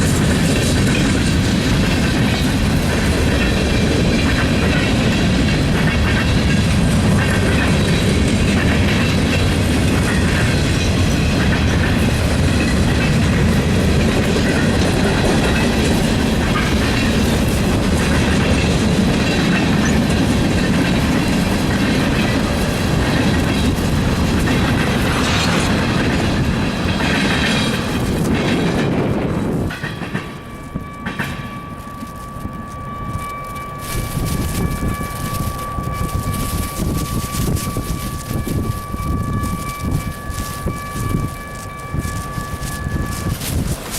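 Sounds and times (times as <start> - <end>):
freight train rumble: 0.0 - 43.9
wheels clattering over rail joints: 0.0 - 43.9
high wheel squeal: 30.4 - 43.9.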